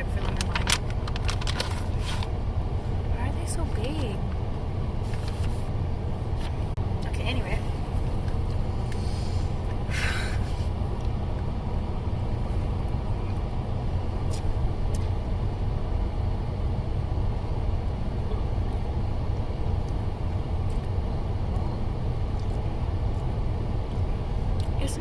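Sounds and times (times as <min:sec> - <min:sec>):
vehicle engine rumble: 0:00.0 - 0:25.0.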